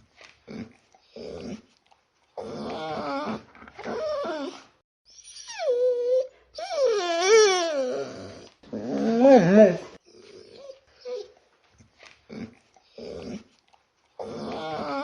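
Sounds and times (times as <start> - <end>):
dog whining and howling: 2.4 - 11.4, 14.2 - 15.0.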